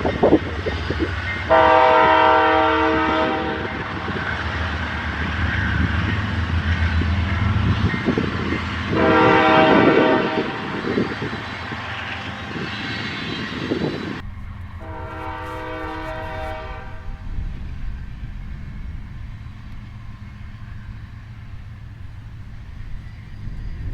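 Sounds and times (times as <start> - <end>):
train rumble: 0.0 - 23.9
train horn chord: 1.5 - 3.8, 8.9 - 11.1, 14.2 - 17.5.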